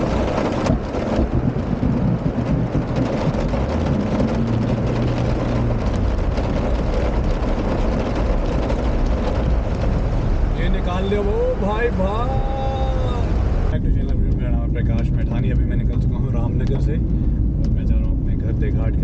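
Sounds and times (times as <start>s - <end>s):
water rushing: 0.0s - 14.3s
heavy rain: 0.0s - 15.8s
car engine running: 0.0s - 19.0s.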